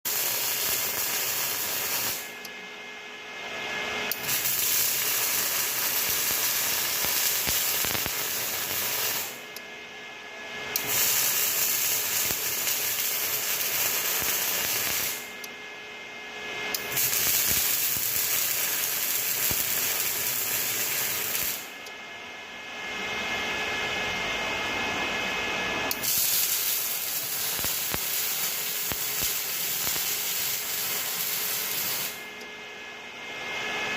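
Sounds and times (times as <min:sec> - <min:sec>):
arc welding hiss: 0:00.1 - 0:02.4, 0:04.1 - 0:09.5, 0:10.8 - 0:15.3, 0:16.8 - 0:21.7, 0:25.9 - 0:32.3.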